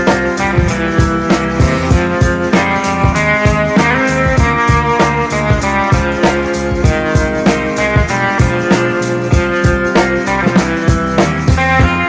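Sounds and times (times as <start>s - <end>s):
guitar music with drum beat: 3.0s - 12.0s.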